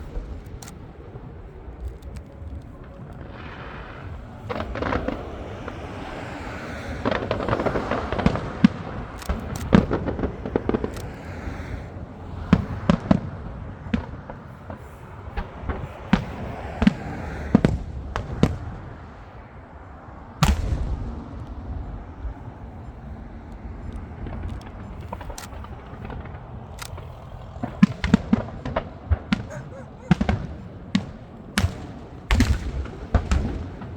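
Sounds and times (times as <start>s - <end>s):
fireworks bangs and crackles: 0.0s - 33.9s
rumbling haze: 0.0s - 33.9s.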